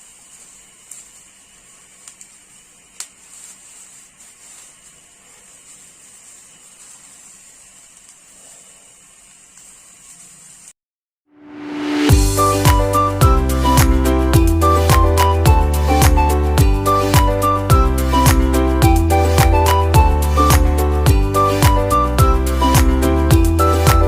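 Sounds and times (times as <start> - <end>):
fire hissing: 0.0 - 10.8.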